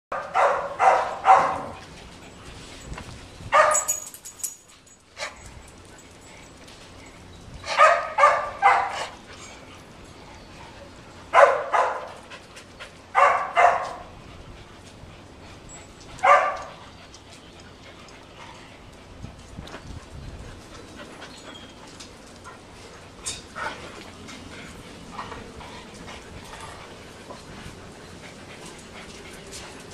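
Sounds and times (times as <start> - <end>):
dog barking: 0.1 - 1.8, 3.6 - 3.9, 7.8 - 9.1, 11.4 - 12.0, 13.2 - 14.0, 16.2 - 16.7.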